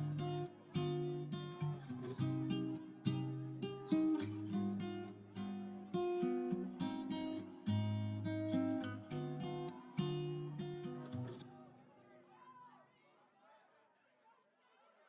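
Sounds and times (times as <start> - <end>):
acoustic guitar chords: 0.0 - 11.5.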